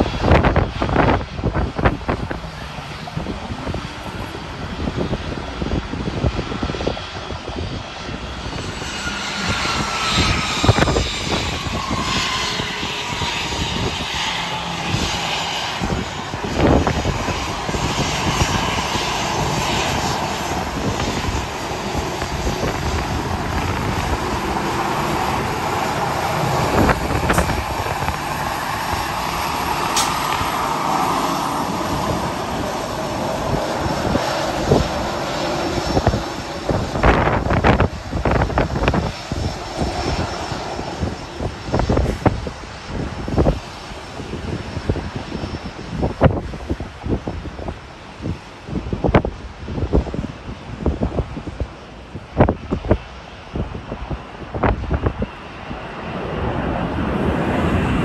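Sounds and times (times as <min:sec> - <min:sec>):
jet engines passing: 0:00.0 - 0:58.0
wind buffeting microphone: 0:00.0 - 0:58.0.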